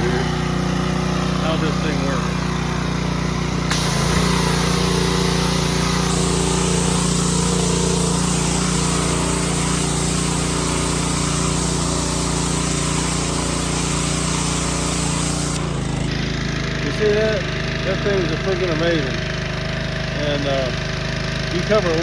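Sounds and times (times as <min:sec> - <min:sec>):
pressure washer engine running: 0:00.0 - 0:22.0
water spray hissing: 0:03.7 - 0:16.1.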